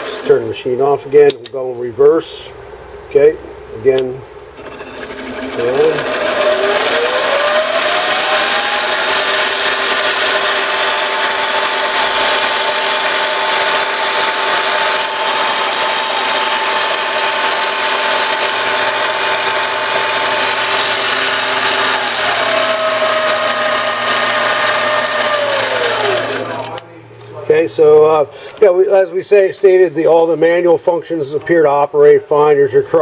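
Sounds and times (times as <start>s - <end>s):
lathe motor whine: 4.6s - 26.8s.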